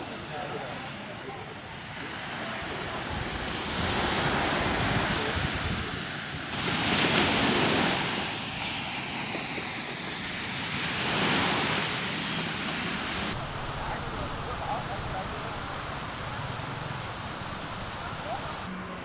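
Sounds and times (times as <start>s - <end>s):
sea waves washing onto beach: 0.0s - 19.0s.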